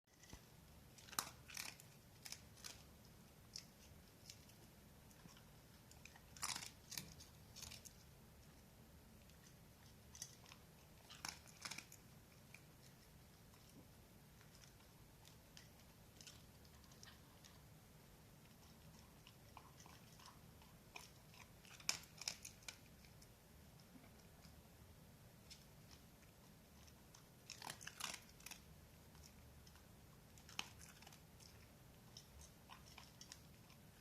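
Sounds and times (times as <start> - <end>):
dog chewing crunchy food: 0.1 - 8.6, 9.3 - 24.5, 25.4 - 34.0.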